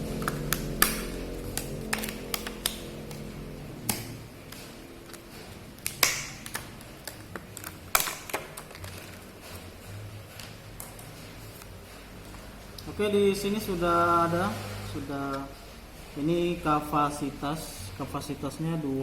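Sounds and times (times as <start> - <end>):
low hum: 0.0 - 8.0
plastic packaging clicks and taps: 0.2 - 3.2, 5.8 - 9.2.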